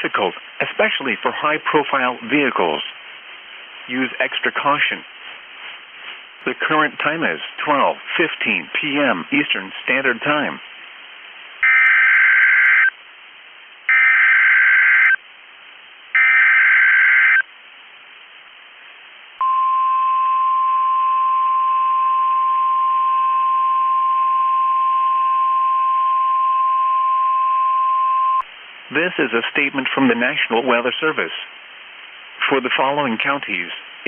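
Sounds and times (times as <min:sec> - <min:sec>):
digital header data bursts: 0:11.6 - 0:12.9, 0:13.9 - 0:15.2, 0:16.2 - 0:17.4
steady alarm tone: 0:11.6 - 0:12.9, 0:13.9 - 0:15.2, 0:16.2 - 0:17.4.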